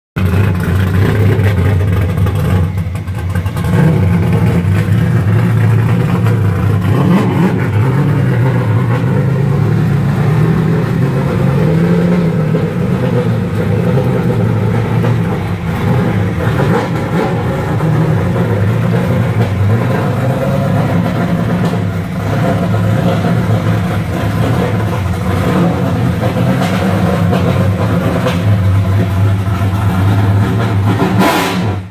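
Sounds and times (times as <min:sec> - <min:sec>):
car engine revving: 0:00.2 - 0:31.9.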